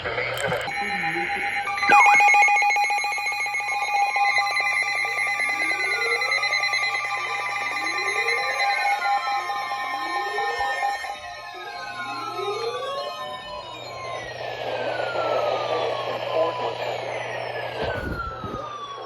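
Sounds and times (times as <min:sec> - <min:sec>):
electronic alert tones: 0:00.3 - 0:11.6
bell-like trill: 0:00.6 - 0:13.1.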